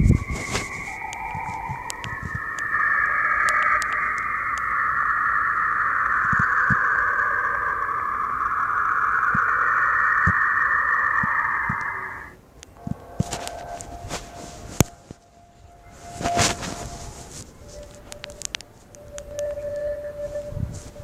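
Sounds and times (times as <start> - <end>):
high hissing whoosh: 0.0 - 12.4
faint clicks: 0.0 - 14.0, 17.4 - 20.5.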